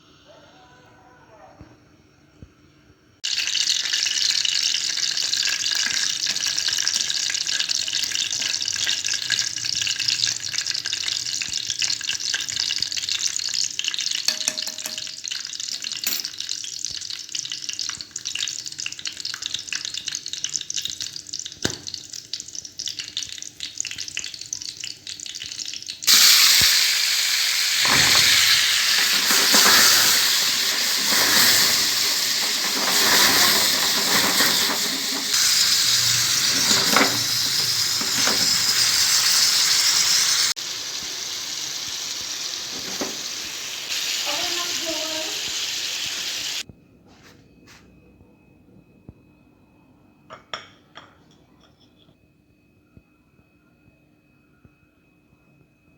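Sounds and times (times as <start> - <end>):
tomatoes sizzling in hot oil: 3.2 - 46.6.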